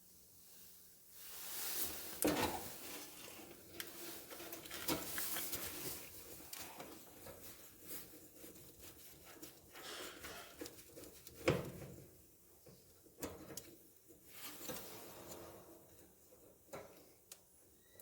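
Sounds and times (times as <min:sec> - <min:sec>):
clatter and scraping of parts: 0:01.7 - 0:17.2.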